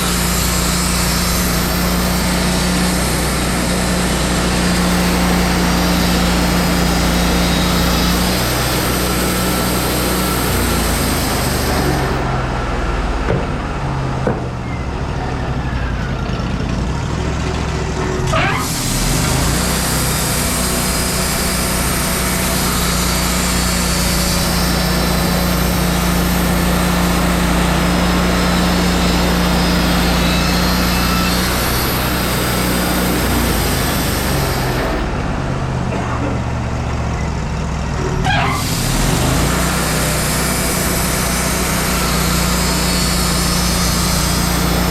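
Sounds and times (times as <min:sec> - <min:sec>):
sawmill engine running: 0:00.0 - 0:44.9
band blade hissing through wood: 0:18.6 - 0:35.0, 0:38.5 - 0:44.9.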